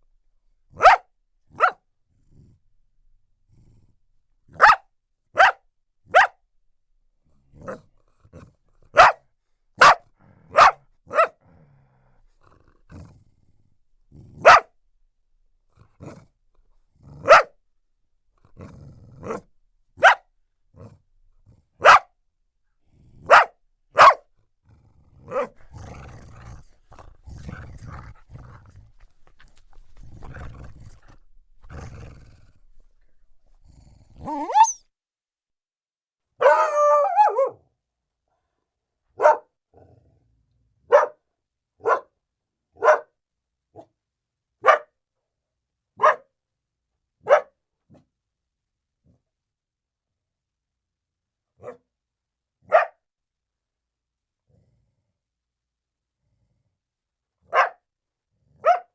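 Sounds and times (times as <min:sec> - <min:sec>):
dog barking: 0:00.8 - 0:01.8, 0:04.5 - 0:06.4, 0:08.9 - 0:11.4, 0:14.4 - 0:14.8, 0:17.2 - 0:17.6, 0:19.2 - 0:20.3, 0:21.8 - 0:22.1, 0:23.2 - 0:24.3, 0:25.3 - 0:25.9, 0:34.2 - 0:34.8, 0:36.4 - 0:37.6, 0:39.2 - 0:39.6, 0:40.9 - 0:41.2, 0:41.8 - 0:42.2, 0:42.8 - 0:43.2, 0:44.6 - 0:45.0, 0:46.0 - 0:46.3, 0:47.2 - 0:47.6, 0:51.6 - 0:51.9, 0:52.7 - 0:53.0, 0:57.5 - 0:57.9, 0:58.6 - 0:58.9
dog growling: 0:02.1 - 0:02.7, 0:03.4 - 0:04.0, 0:07.3 - 0:09.0, 0:10.0 - 0:14.7, 0:15.7 - 0:17.5, 0:18.4 - 0:19.5, 0:20.7 - 0:21.8, 0:24.1 - 0:34.8.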